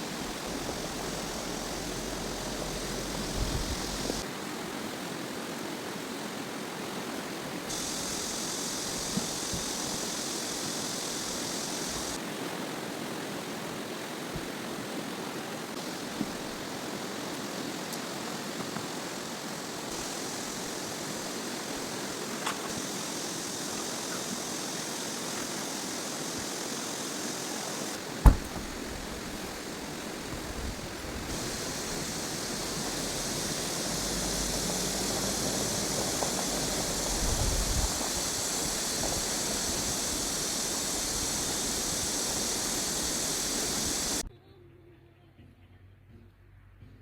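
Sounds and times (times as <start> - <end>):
rushing water: 0.0 - 44.2
sharp knock: 28.2 - 29.5.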